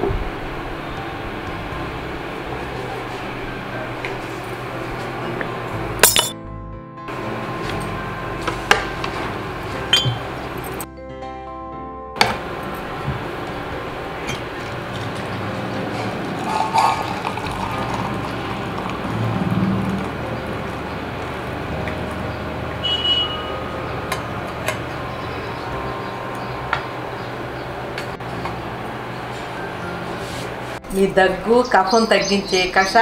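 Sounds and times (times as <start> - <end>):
utensils clinking: 6.0 - 6.4, 14.3 - 19.1
liquid trickling and splashing: 15.9 - 20.2.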